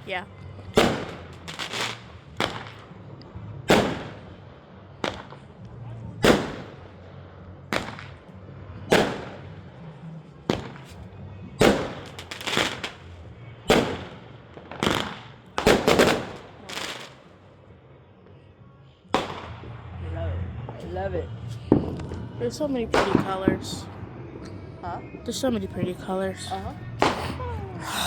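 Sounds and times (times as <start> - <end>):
fireworks bangs: 0.8 - 3.0, 3.7 - 5.5, 6.2 - 6.8, 7.7 - 8.2, 8.9 - 9.6, 10.5 - 11.0, 11.6 - 13.1, 13.7 - 17.2, 19.1 - 19.8, 22.9 - 24.1.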